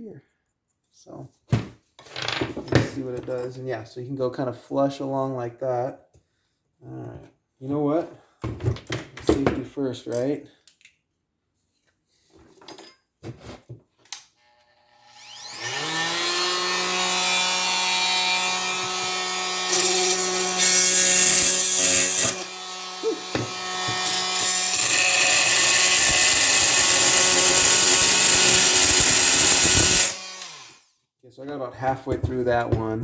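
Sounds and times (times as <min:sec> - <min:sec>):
oscillating multi-tool buzzing: 0:14.9 - 0:30.9
blade grinding metal: 0:15.1 - 0:30.8.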